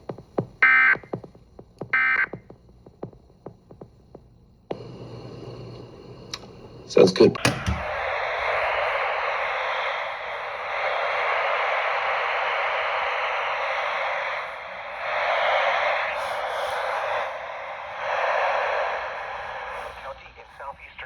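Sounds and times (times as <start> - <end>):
radio static hiss: 4.7 - 7.5, 19.6 - 21.0.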